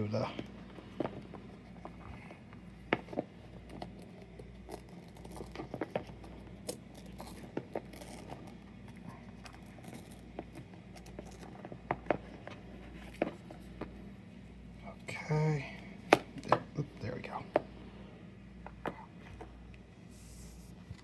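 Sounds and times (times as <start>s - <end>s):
low electrical hum: 0.0s - 21.0s
packaging crinkling and clicks: 3.1s - 11.6s.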